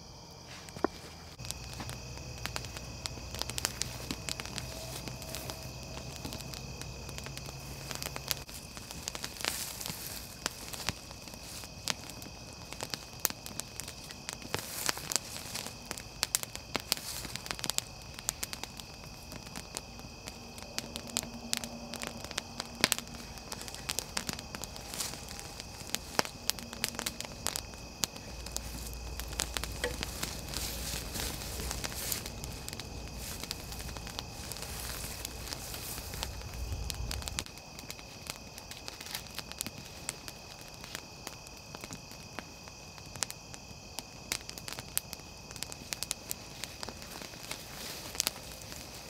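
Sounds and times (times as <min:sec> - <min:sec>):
campfire crackling and popping: 0:00.0 - 0:49.0.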